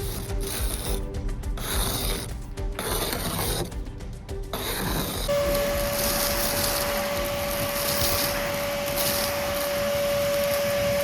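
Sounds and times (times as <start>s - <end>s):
electric motor whining: 4.6s - 11.0s
rushing air noise: 5.3s - 11.0s.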